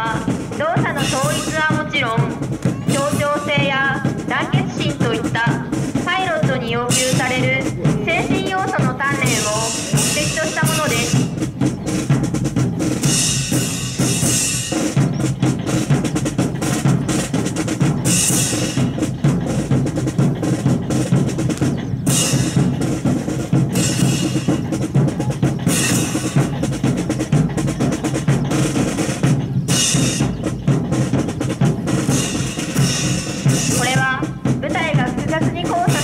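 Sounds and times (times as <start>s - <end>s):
snare and bass drum marching beat: 0.0s - 36.0s.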